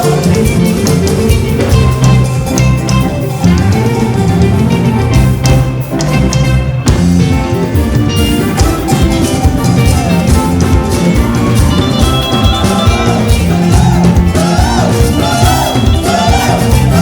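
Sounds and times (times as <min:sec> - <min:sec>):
church band playing: 0:00.0 - 0:17.0
drums keeping steady beat: 0:00.0 - 0:17.0.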